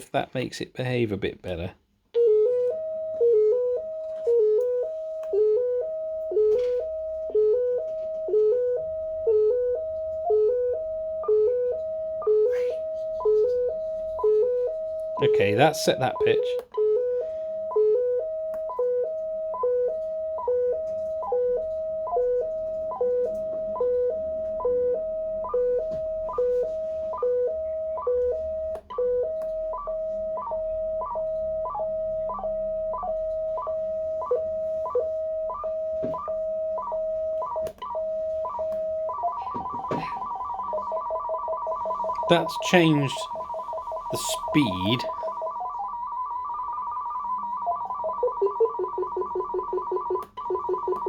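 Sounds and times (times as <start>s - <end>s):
electronic sequencer beeping: 3.2s - 17.2s, 18.0s - 51.0s.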